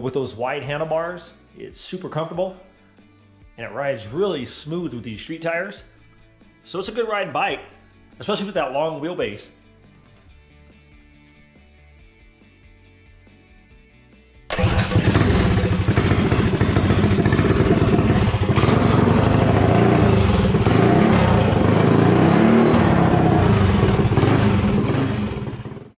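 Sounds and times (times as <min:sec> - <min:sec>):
minibike engine running: 0:14.5 - 0:25.9.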